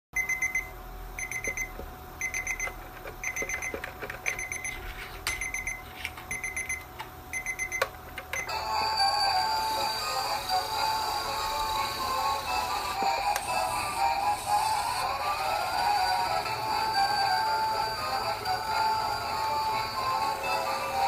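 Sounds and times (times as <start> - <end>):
high electronic alarm beeps: 0.2 - 7.8.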